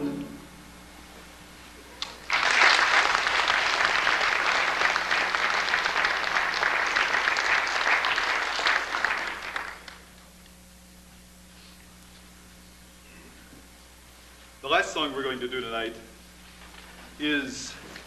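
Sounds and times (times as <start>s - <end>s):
audience applauding: 2.0s - 10.1s.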